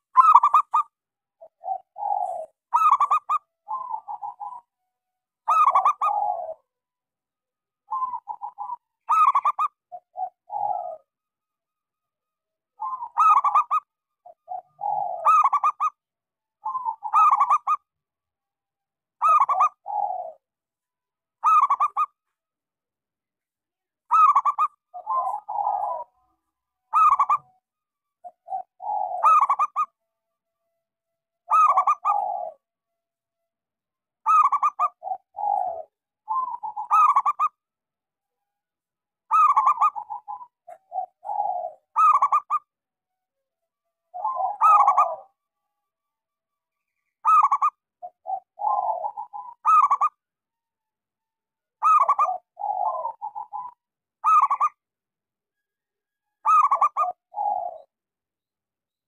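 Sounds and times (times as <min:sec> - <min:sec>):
dove cooing: 0:00.0 - 0:04.8, 0:05.4 - 0:06.7, 0:07.9 - 0:11.2, 0:12.8 - 0:16.0, 0:16.6 - 0:17.9, 0:19.2 - 0:20.5, 0:21.4 - 0:22.2, 0:24.0 - 0:27.5, 0:28.2 - 0:30.0, 0:31.5 - 0:32.7, 0:34.2 - 0:37.6, 0:39.3 - 0:42.7, 0:44.1 - 0:45.4, 0:47.2 - 0:50.2, 0:51.8 - 0:54.8, 0:56.4 - 0:57.9.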